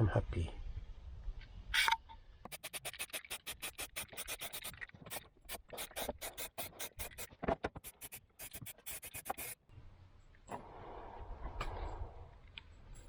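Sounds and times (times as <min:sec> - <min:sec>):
hand tool scratching metal: 0:02.5 - 0:09.6.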